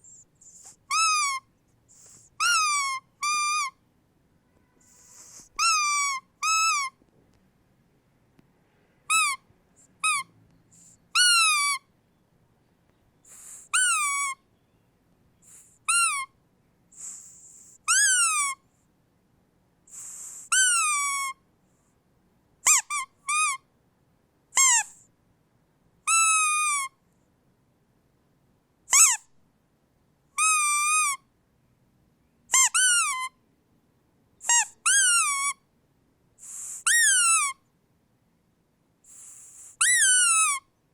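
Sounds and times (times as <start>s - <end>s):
squeaky dog toy squeaking: 0.0s - 3.8s, 4.8s - 7.0s, 9.0s - 11.9s, 13.3s - 14.4s, 15.4s - 16.4s, 17.0s - 18.6s, 19.9s - 21.4s, 22.6s - 23.7s, 24.5s - 25.1s, 26.1s - 27.0s, 28.9s - 29.4s, 30.4s - 31.2s, 32.5s - 33.4s, 34.4s - 35.6s, 36.4s - 37.6s, 39.1s - 40.7s
breathy hiss of air: 4.8s - 5.6s.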